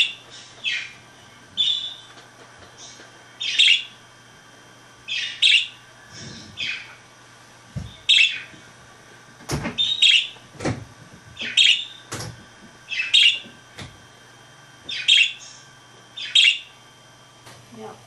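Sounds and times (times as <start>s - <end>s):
budgerigar chirps: 3.4s - 3.9s, 5.1s - 5.8s, 9.8s - 10.3s, 11.4s - 12.0s, 12.9s - 13.4s, 14.9s - 15.5s, 16.2s - 16.7s.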